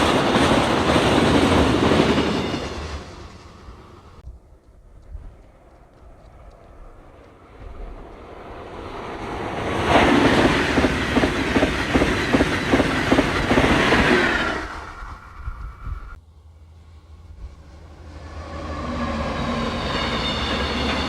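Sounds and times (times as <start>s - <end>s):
train passing: 0.0s - 21.0s
wheels clacking over rail joints: 5.0s - 14.8s.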